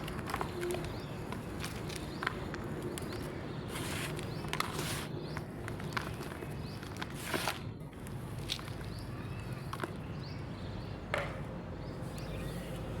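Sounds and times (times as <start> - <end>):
chalk being crushed: 3.7 - 7.7.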